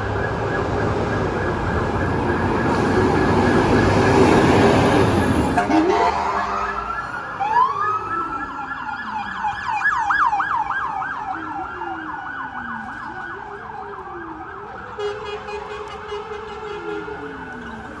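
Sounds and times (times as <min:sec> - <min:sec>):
lower siren rising and falling: 0:00.0 - 0:18.0
electronic siren wailing and yelping: 0:00.3 - 0:13.7
vehicle horn: 0:05.5 - 0:07.0.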